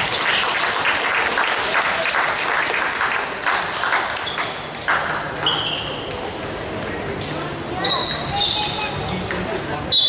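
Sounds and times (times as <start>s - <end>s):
spectators clapping: 0.0s - 5.2s.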